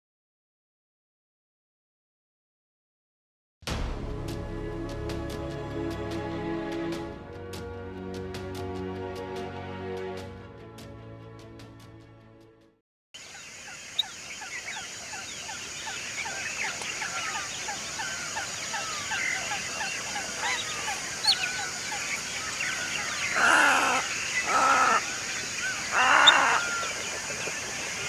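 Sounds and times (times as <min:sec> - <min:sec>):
steady high hiss: 0:13.2 - 0:28.0
water birds chirping: 0:13.2 - 0:28.0
harsh bird squawks: 0:13.3 - 0:28.0.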